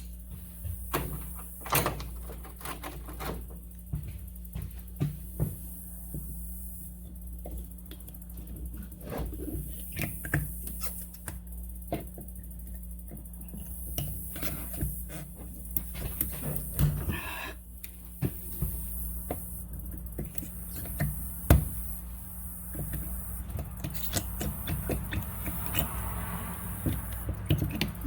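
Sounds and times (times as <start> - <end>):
steady low hum: 0.0 - 28.0
clicks and taps on parts: 17.8 - 21.8, 22.7 - 26.1, 26.7 - 28.0.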